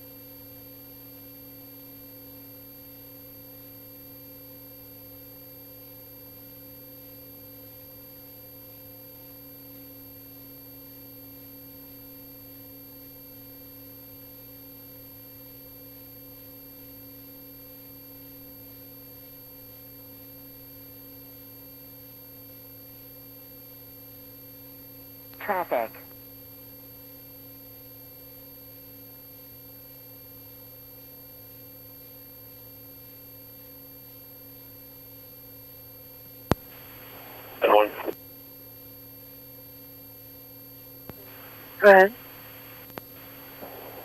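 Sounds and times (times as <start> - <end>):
faint steady tones: 36.5 - 38.2, 41.2 - 44.0
steady electrical hum: 36.5 - 38.2, 41.2 - 44.0.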